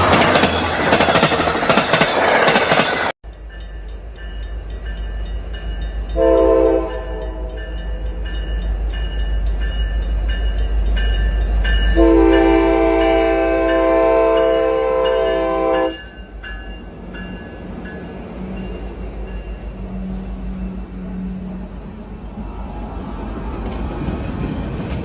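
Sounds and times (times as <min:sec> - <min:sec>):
train wheels clicking: 0:00.0 - 0:15.5, 0:22.4 - 0:25.0
freight train rumbling past: 0:00.0 - 0:25.0
train horn blast: 0:06.2 - 0:07.7, 0:11.9 - 0:16.2.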